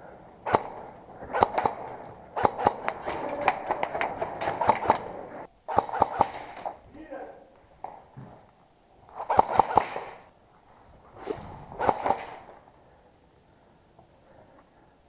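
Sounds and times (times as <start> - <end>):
airsoft guns firing: 0.4 - 6.8, 9.1 - 10.3, 11.8 - 12.6.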